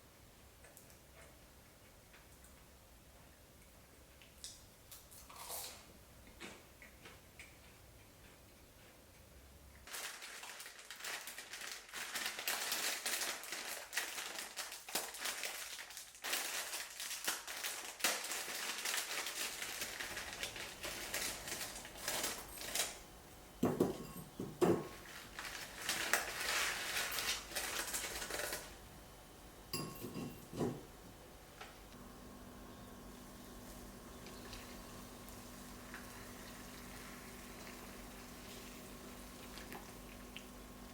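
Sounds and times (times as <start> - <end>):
dense crackling and rustling: 9.8 - 23.1, 24.9 - 28.8.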